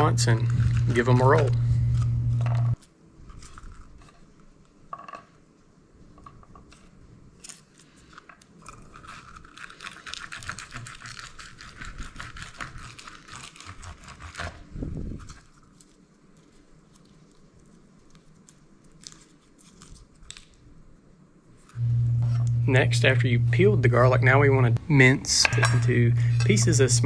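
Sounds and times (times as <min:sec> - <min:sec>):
garlic skins crackling: 0:00.0 - 0:02.8.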